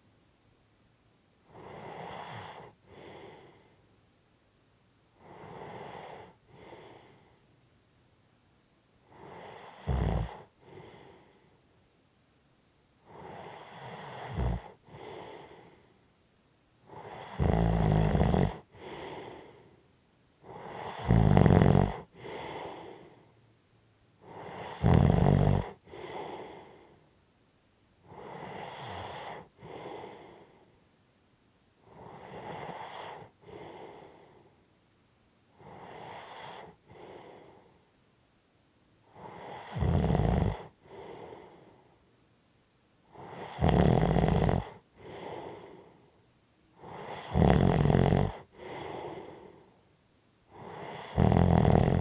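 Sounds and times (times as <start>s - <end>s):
person snoring: 1.5s - 3.6s, 9.1s - 11.4s, 13.1s - 15.8s, 16.9s - 19.7s, 20.4s - 23.2s, 24.2s - 27.0s, 28.1s - 30.6s, 31.9s - 34.4s, 35.6s - 37.7s, 39.2s - 41.7s, 43.1s - 46.0s, 46.8s - 49.7s, 50.5s - 52.0s
heavy breathing: 1.5s - 3.9s, 5.2s - 7.5s, 10.3s - 11.6s, 14.7s - 16.0s, 18.6s - 19.8s, 21.9s - 23.4s, 25.7s - 27.1s, 28.1s - 30.8s, 31.9s - 34.6s, 35.6s - 37.8s, 40.6s - 42.0s, 44.6s - 46.1s, 48.3s - 49.8s.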